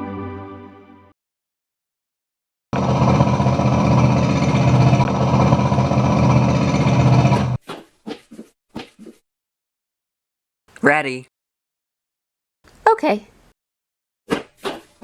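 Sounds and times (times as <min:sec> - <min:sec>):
machine motor rattling: 0:02.8 - 0:07.6.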